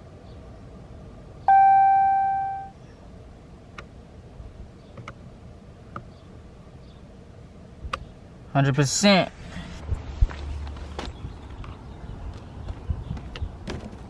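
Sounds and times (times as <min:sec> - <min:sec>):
dashboard electronic chime: 0:01.5 - 0:02.7.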